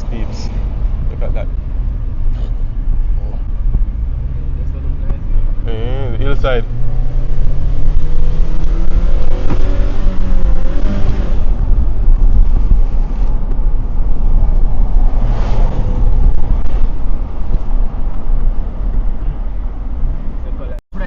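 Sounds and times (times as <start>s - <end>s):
car road and engine noise: 0.0s - 21.0s.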